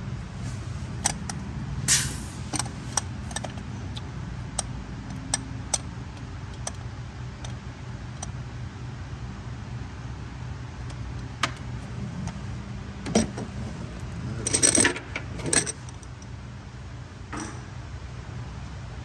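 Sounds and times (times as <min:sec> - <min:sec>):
metal parts clinking: 0:00.4 - 0:03.6, 0:13.2 - 0:16.1.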